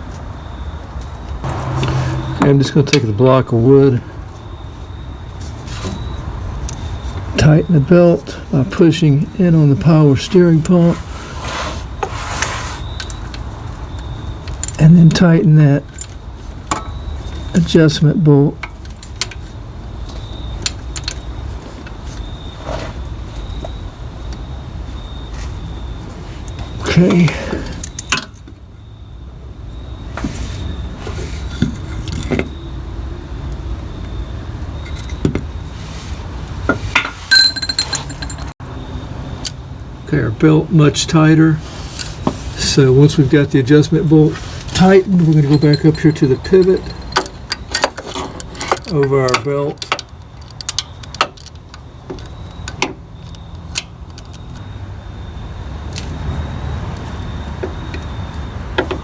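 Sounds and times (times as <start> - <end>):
steady low rumble: 1.4 - 4.2
wrench metal clicks and knocks: 45.4 - 54.5.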